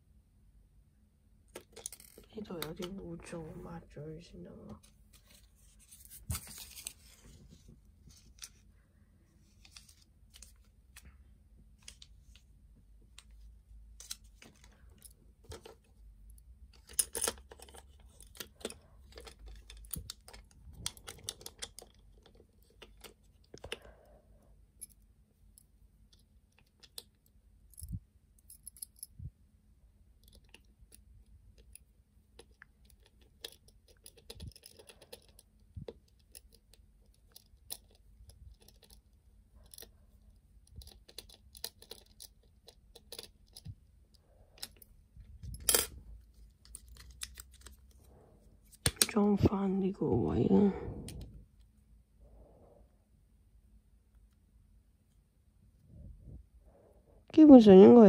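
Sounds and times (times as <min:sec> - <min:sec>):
soft rubbing: 0:04.8 - 0:08.7.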